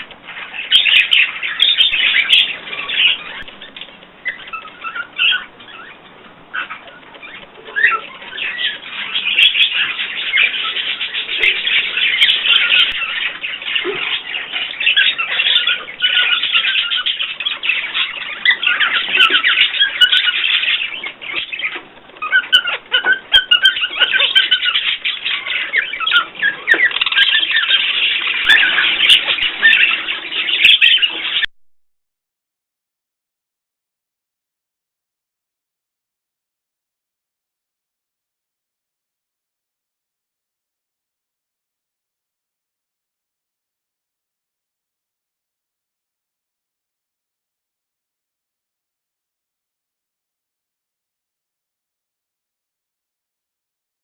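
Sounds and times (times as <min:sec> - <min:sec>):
cage birds chirping: 0:00.0 - 0:31.5.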